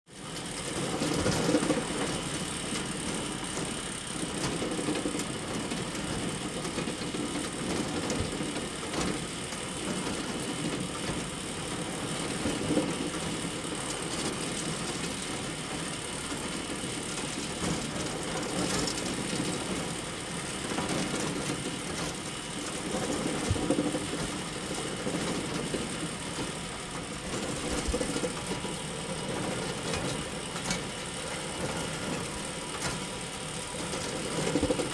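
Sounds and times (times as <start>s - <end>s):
chain conveyor clattering: 16.4s - 34.9s.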